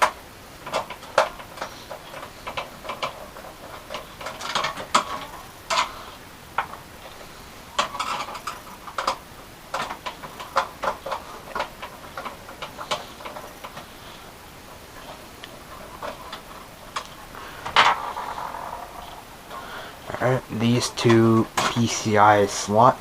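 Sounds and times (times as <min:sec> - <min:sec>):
computer parts clicking and tapping: 0:00.0 - 0:22.1.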